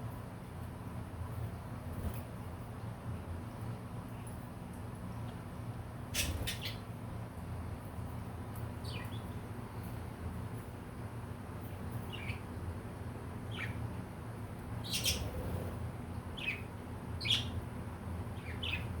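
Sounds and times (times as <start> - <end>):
budgerigars chirping: 13.5 - 13.8, 14.8 - 15.4, 16.4 - 17.6, 18.4 - 18.9.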